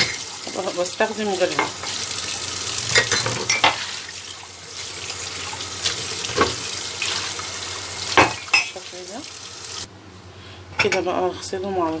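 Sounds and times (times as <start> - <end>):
tap running into sink: 5.5 - 8.8.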